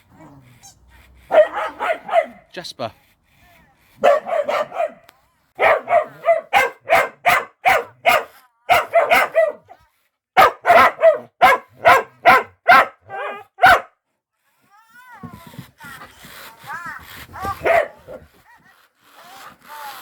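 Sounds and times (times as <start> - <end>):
dog barking: 1.2 - 2.5, 4.0 - 9.8, 10.4 - 14.0, 17.5 - 18.3.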